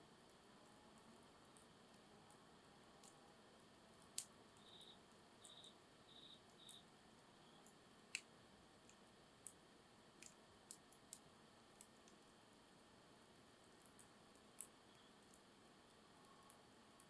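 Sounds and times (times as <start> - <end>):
firewood crackling and popping: 3.9 - 6.8.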